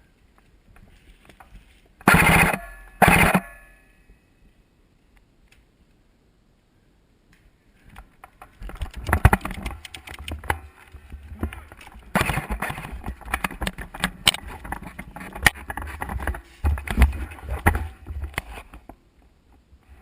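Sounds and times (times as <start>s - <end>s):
airsoft rifle full-auto bursts: 2.1s - 3.4s
knocks and rustling: 7.8s - 19.0s.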